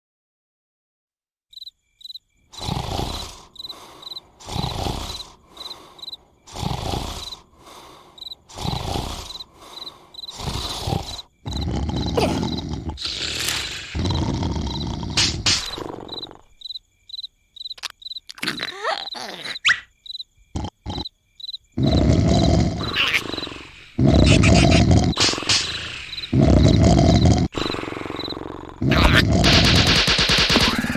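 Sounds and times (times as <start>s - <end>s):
crickets chirping: 1.5s - 30.9s
cartoon character snoring: 2.6s - 16.6s, 17.8s - 19.8s, 20.6s - 21.1s, 21.8s - 30.9s.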